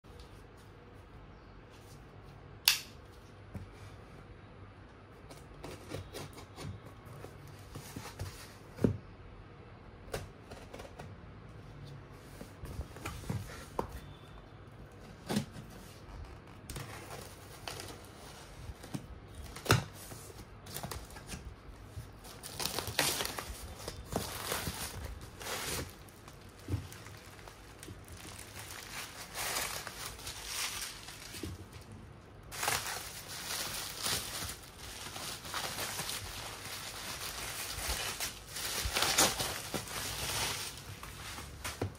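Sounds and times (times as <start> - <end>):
packaging rustling: 15.4 - 41.9.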